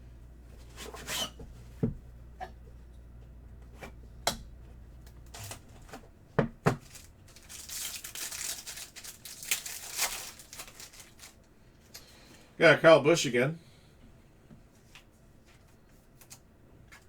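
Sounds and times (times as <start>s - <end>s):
plastic wrapping tearing and crinkling: 5.3s - 6.0s, 6.7s - 11.5s.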